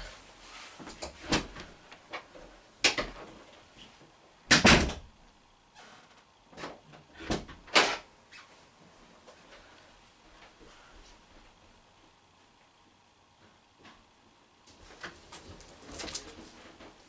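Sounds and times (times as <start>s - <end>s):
door knocks and thuds: 4.5s - 5.1s.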